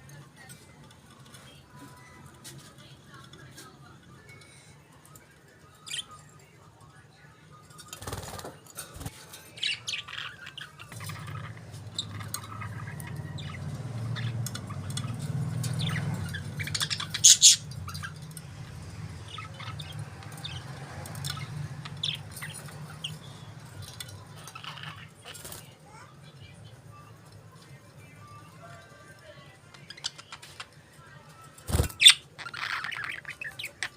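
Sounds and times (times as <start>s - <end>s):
budgerigars chirping: 9.6s - 18.2s, 19.2s - 23.5s, 31.7s - 33.9s.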